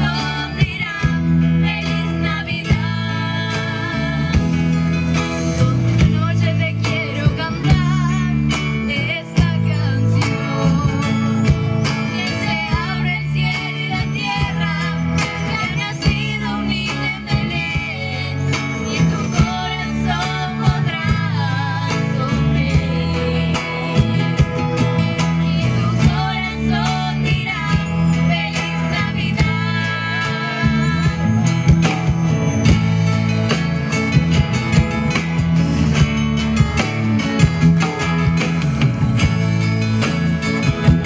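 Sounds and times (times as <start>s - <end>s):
bass line: 0.0s - 41.0s
guitar: 0.0s - 41.0s
sharp percussive beats: 17.4s - 41.0s.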